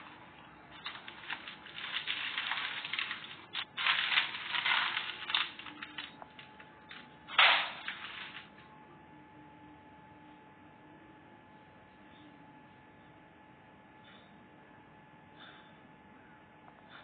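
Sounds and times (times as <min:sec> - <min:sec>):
dry debris crunching: 0:00.0 - 0:08.6.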